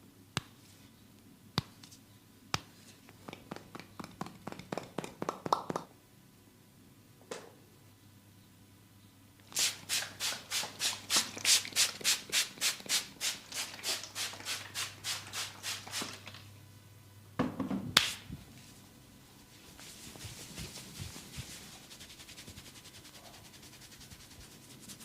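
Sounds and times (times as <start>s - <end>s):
hands rubbing over skin: 19.5s - 25.0s.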